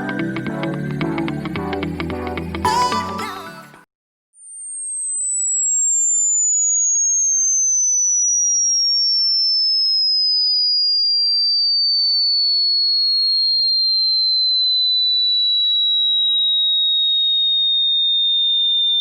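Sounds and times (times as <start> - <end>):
sine tone sliding downward: 4.4 - 19.0.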